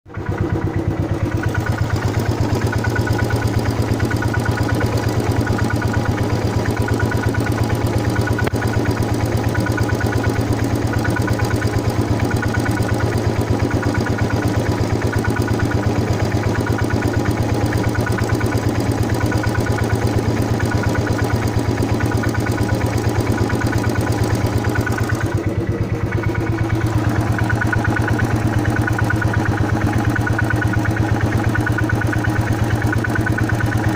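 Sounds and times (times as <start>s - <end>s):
motorcycle engine idling: 0.1s - 33.9s.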